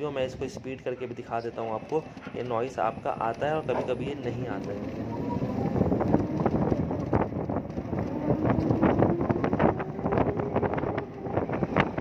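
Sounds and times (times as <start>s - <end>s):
wind buffeting microphone: 0.0s - 12.0s
scooter drive belt whining: 1.2s - 12.0s.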